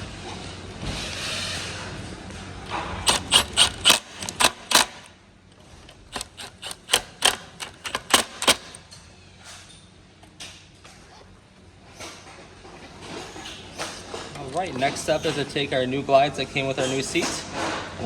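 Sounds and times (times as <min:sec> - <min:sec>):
sharp mechanical clicks: 0:03.1 - 0:05.1, 0:05.9 - 0:08.8.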